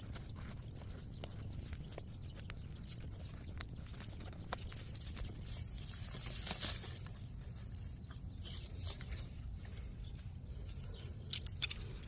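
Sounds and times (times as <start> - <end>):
low steady rumble: 0.0 - 12.0
rustling and scratching: 2.7 - 12.0.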